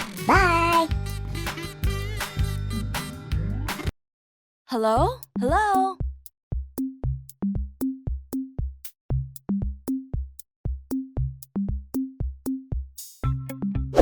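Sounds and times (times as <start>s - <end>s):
drum-machine beat: 0.0s - 3.9s, 5.0s - 13.6s
plucked bass notes: 0.2s - 3.8s, 6.8s - 7.7s, 11.1s - 11.8s, 13.2s - 14.0s.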